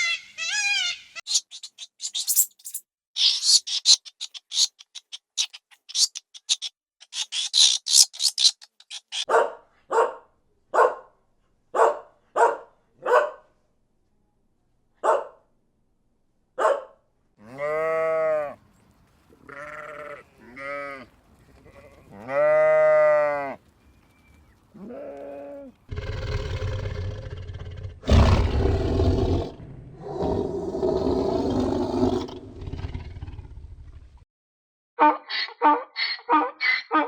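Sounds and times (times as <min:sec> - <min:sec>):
animal bleating: 0:17.4 - 0:18.6, 0:19.4 - 0:23.6.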